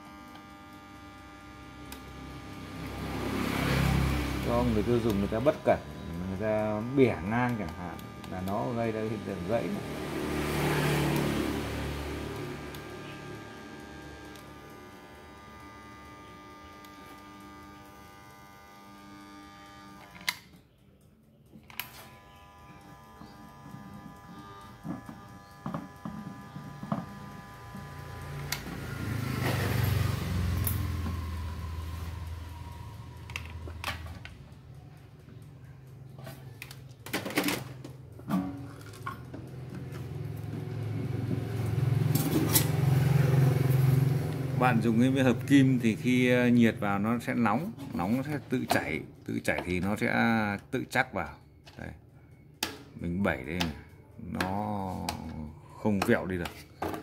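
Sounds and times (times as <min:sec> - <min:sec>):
steady electrical buzz: 0:00.0 - 0:56.9
motor vehicle engine hum: 0:00.1 - 0:19.9, 0:20.7 - 0:50.1
metal parts and tools clinking: 0:36.6 - 0:39.4.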